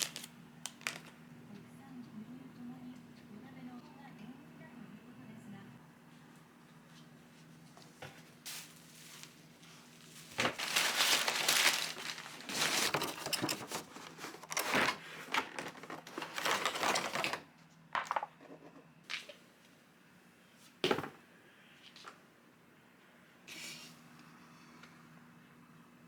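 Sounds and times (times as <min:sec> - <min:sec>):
packaging crinkling and rustling: 0:00.0 - 0:01.2, 0:08.5 - 0:17.5.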